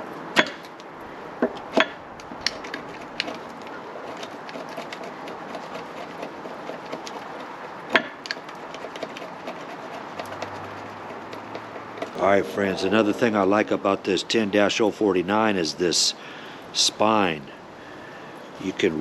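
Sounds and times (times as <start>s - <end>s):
wood scraping: 1.4s - 12.2s.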